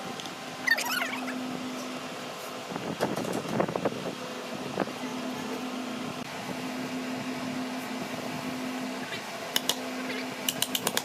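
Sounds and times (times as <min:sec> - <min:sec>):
steady machine hum: 0:00.0 - 0:11.0
sharp clicks and knocks: 0:10.4 - 0:11.0.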